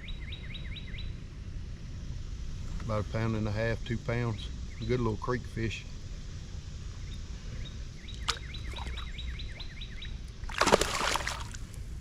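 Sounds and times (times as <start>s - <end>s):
songbird chirping: 0.0s - 1.2s, 6.5s - 11.8s
loud splash in water: 10.5s - 11.6s.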